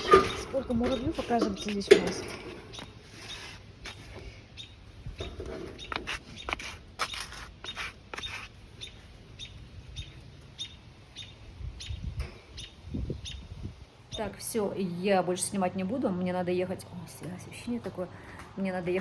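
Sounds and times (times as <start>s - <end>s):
small bird chirping: 0.2s - 14.4s.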